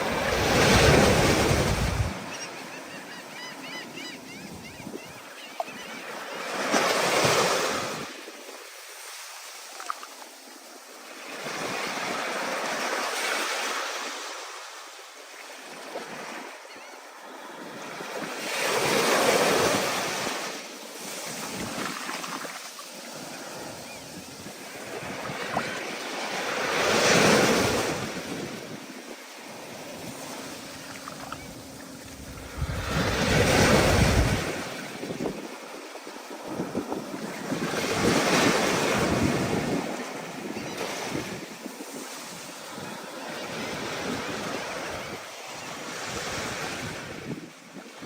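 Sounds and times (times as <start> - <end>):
ocean waves breaking: 0.0 - 4.2, 15.7 - 47.2.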